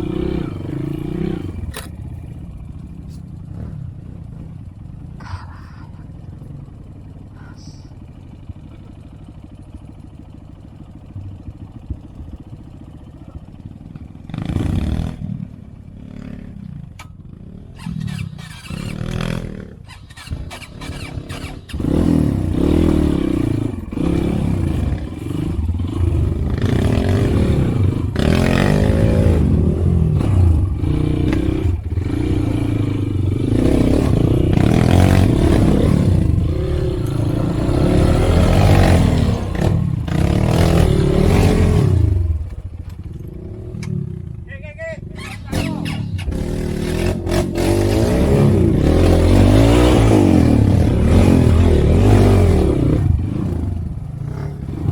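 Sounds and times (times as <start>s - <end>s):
engine clatter: 0.0s - 54.9s
motorcycle engine revving: 0.0s - 54.9s.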